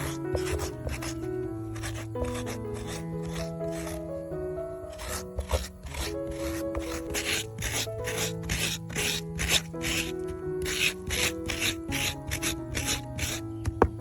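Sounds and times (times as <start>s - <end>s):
rasping scraping strokes: 0.0s - 4.1s, 4.9s - 14.0s
background music with sustained notes: 0.0s - 14.0s.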